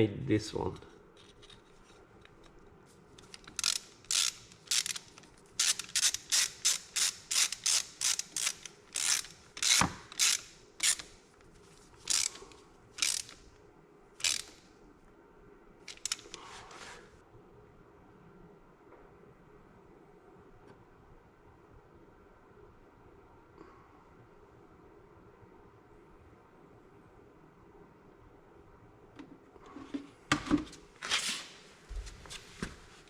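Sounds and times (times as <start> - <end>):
sharp mechanical clicks: 3.2 - 11.1, 12.1 - 13.4, 14.2 - 14.6, 15.9 - 16.4.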